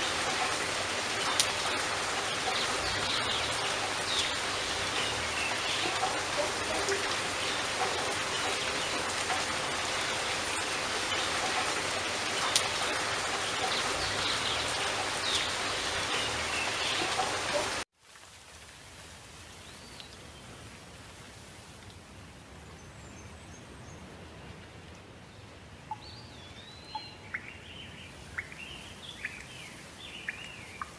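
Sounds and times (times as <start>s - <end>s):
rushing water hiss: 0.0s - 23.2s, 26.0s - 30.9s
forest ambience: 0.0s - 30.9s
bird chirps: 25.9s - 30.9s.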